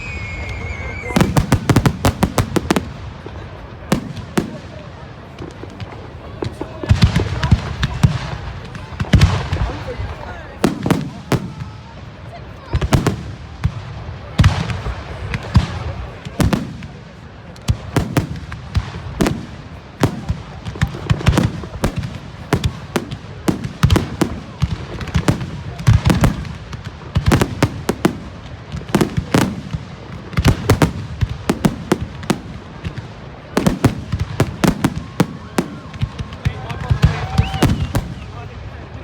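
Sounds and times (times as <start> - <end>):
fireworks bangs and cracks: 0.0 - 39.0.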